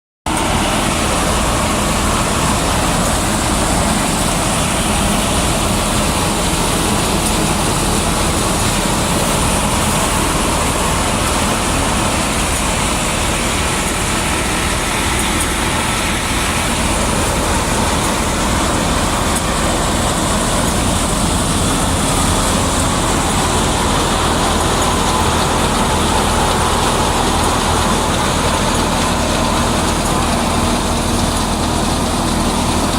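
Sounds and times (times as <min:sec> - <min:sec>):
diesel engine droning: 0:00.3 - 0:32.9.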